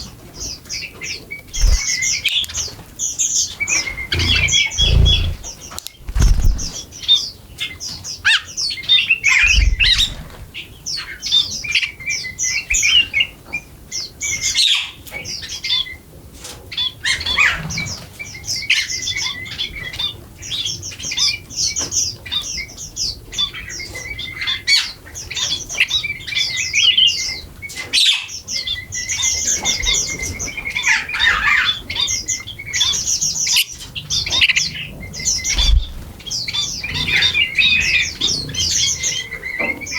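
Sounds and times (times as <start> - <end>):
small birds chirping and squawking: 0.0 - 8.6, 28.0 - 39.9
low thumps: 3.9 - 6.9.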